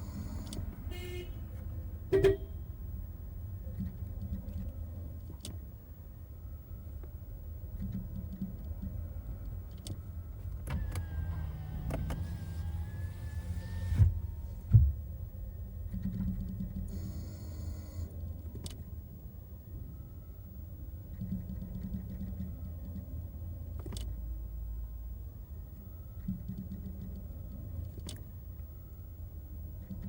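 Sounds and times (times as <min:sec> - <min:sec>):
car rumble: 0:00.0 - 0:30.0
brakes whining: 0:09.2 - 0:15.0.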